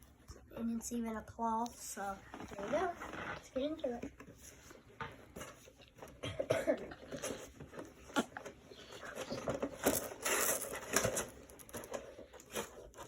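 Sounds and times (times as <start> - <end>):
packaging rustling: 7.3 - 13.0.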